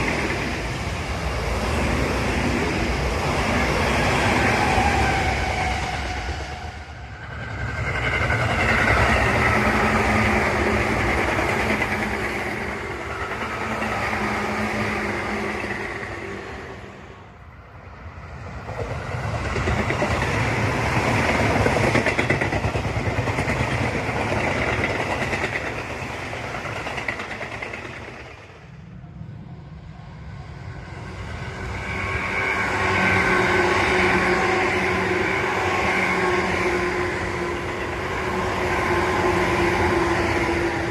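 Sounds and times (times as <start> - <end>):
train wheel and rail rumble: 0.0 - 40.9.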